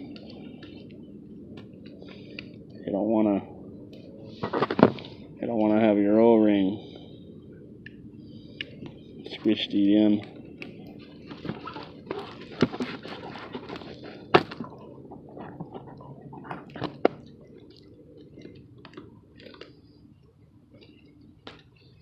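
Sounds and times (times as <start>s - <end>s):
plastic parts rubbing: 11.1s - 17.2s.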